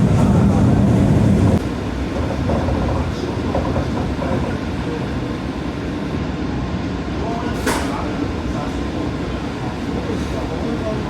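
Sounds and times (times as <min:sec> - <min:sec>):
train rumbling: 0:00.0 - 0:11.0.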